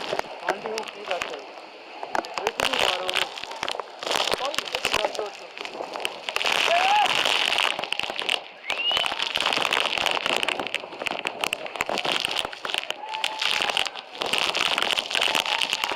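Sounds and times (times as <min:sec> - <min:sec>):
rush of falling water: 0:00.0 - 0:15.9
water drops pelting camera: 0:00.0 - 0:15.9.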